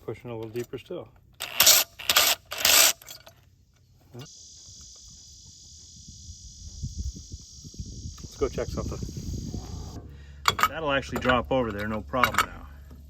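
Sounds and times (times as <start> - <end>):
crickets chirping: 4.0 - 10.4.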